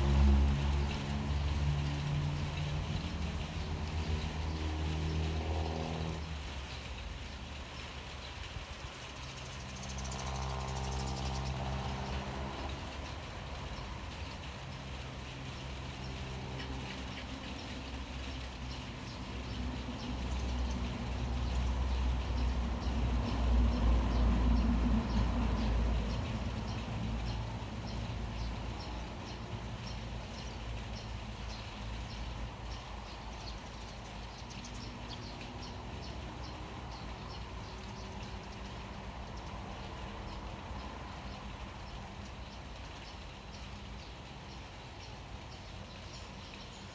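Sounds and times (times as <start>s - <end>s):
vehicle engine rumble: 0.0s - 46.9s.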